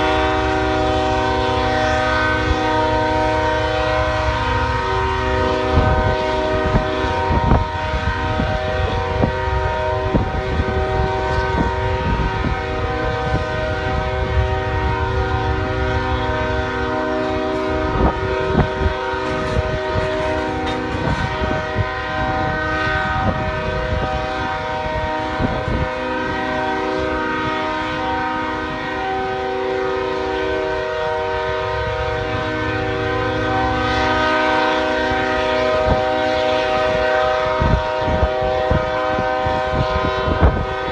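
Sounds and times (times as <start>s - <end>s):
train horn blasting: 0.0s - 40.9s
low rumble: 5.7s - 27.5s.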